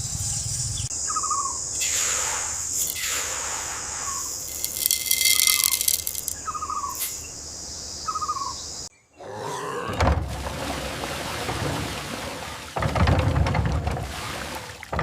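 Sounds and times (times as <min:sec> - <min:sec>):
steady hiss: 0:00.0 - 0:08.9
short chirping bird calls: 0:04.0 - 0:07.4
high insect buzzing: 0:04.1 - 0:07.3.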